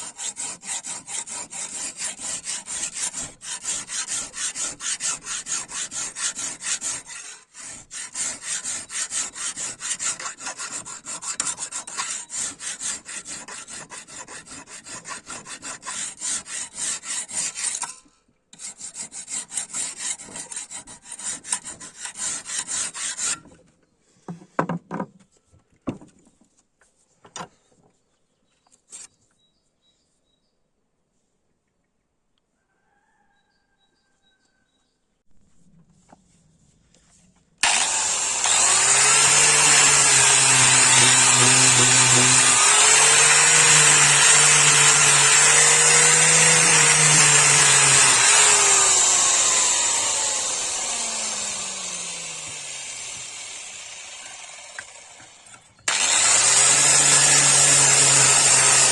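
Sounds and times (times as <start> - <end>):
file rasping on steel: 0.0 - 23.5, 37.6 - 53.3, 55.9 - 58.9.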